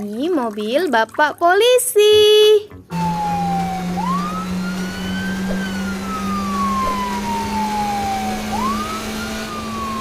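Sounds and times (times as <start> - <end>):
police siren wailing: 2.9 - 10.0
steady low drone: 2.9 - 10.0.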